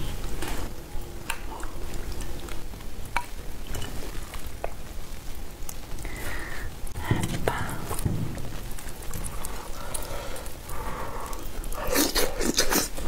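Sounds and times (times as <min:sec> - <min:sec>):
low background rumble: 0:00.0 - 0:11.8.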